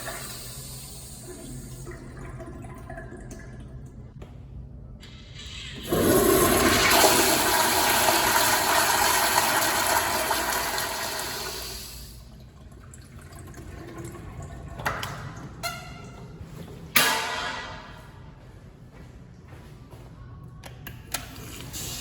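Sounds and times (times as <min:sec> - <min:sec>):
toilet flushing: 0:00.0 - 0:04.2, 0:05.0 - 0:16.2.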